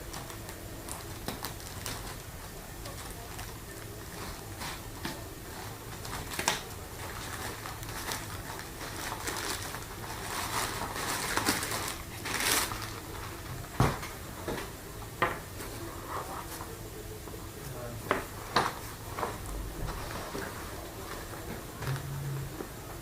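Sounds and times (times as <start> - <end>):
packaging rustling: 0.0 - 14.1.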